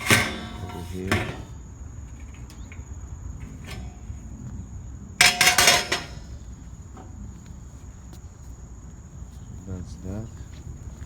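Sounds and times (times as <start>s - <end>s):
metal parts clattering: 0.0s - 4.2s, 5.2s - 6.5s.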